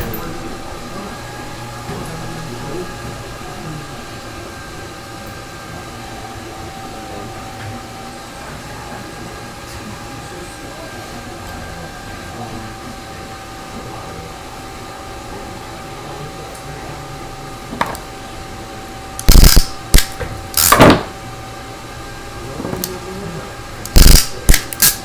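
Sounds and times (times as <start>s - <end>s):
steady hum with high whine: 0.0s - 25.0s
cable and tools handling noise: 19.2s - 20.9s, 23.8s - 25.0s.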